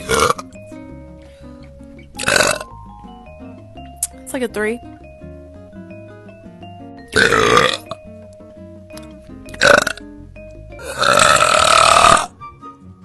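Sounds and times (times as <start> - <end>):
girl burping loudly: 0.0 - 0.5, 2.2 - 2.7, 7.1 - 8.0, 9.5 - 10.0, 10.8 - 12.3
light background music: 0.0 - 13.0.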